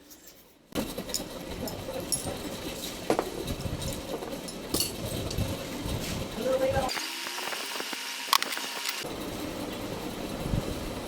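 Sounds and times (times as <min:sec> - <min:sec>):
shop background noise: 0:00.0 - 0:11.0
metal clicks and scraping: 0:07.2 - 0:09.1.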